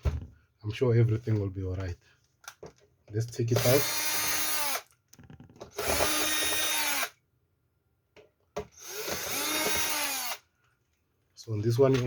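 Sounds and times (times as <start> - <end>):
power screwdriver motor whine: 5.8 - 7.1, 8.8 - 10.4.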